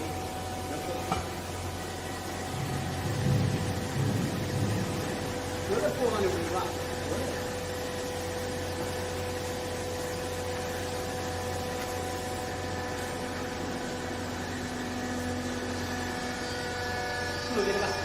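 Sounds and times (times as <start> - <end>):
baler motor and pump humming: 0.0 - 18.0
low hum tone: 1.8 - 5.5.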